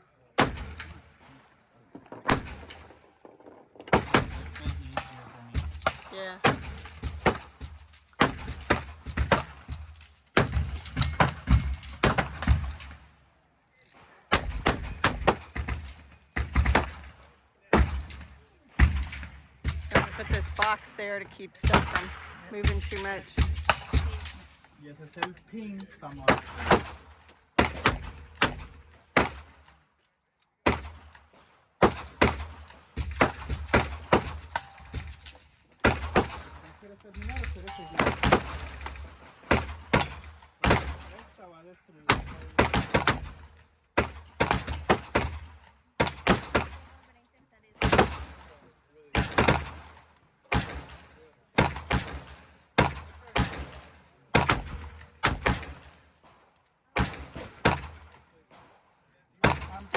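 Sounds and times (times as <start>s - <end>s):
gunshots: 0.4s - 1.5s, 2.2s - 3.0s, 3.9s - 13.1s, 14.0s - 25.4s, 26.0s - 29.8s, 30.6s - 41.4s, 42.1s - 47.0s, 47.8s - 56.4s, 57.0s - 58.8s, 59.4s - 59.9s
gunshots with echo: 14.3s - 24.5s, 26.2s - 29.7s.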